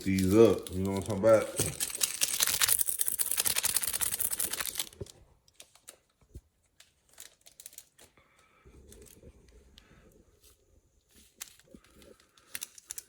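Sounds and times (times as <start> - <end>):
packaging crinkling: 0.0 - 8.2.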